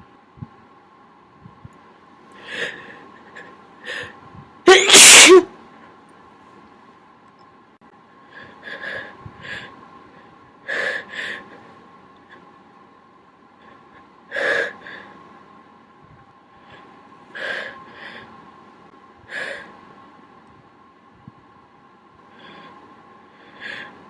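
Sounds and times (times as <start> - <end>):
person sneezing: 4.7 - 5.4.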